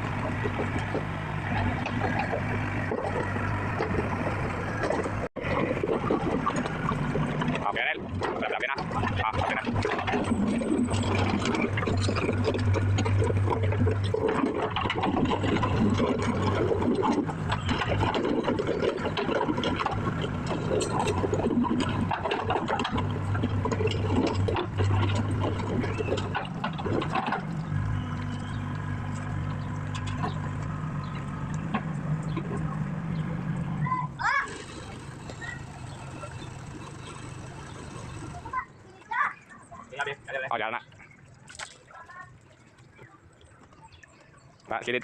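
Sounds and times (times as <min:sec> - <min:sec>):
heavy machine engine running: 0:00.0 - 0:39.0.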